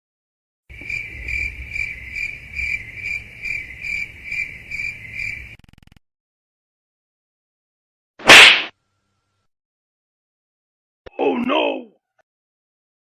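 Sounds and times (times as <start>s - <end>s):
cricket chirping: 0.7s - 5.9s.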